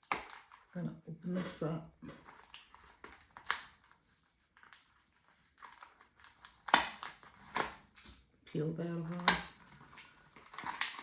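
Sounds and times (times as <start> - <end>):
packaging clicks and crinkles: 0.0 - 0.7, 2.0 - 8.4, 9.0 - 11.0
packaging rustling: 1.6 - 8.3, 9.1 - 11.0.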